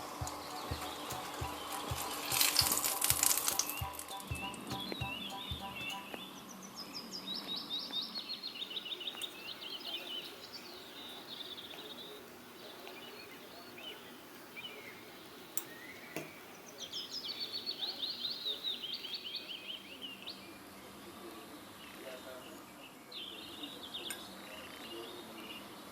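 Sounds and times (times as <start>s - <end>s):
songbird trilling: 0.4s - 6.6s.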